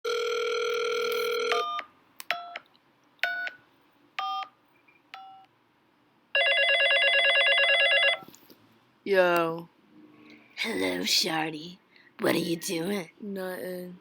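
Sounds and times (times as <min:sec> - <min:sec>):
telephone ringing tone: 0:00.1 - 0:01.8, 0:06.4 - 0:08.2.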